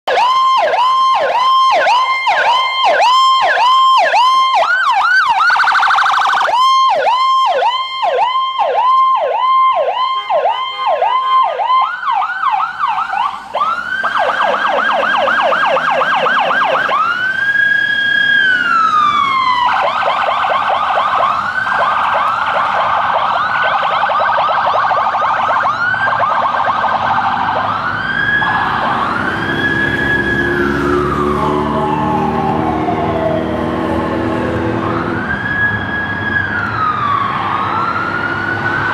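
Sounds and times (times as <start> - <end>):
ambulance siren: 0.0 - 38.9
vehicle engine rumbling: 10.2 - 38.9.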